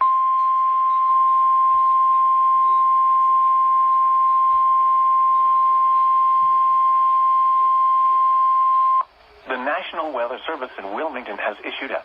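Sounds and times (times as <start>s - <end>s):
steady alarm tone from radio speaker: 0.0s - 9.1s.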